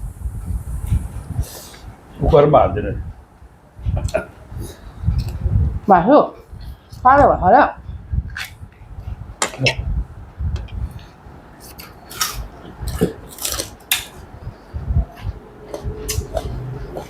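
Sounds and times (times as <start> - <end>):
person chewing food: 11.7 - 14.2, 15.1 - 17.0.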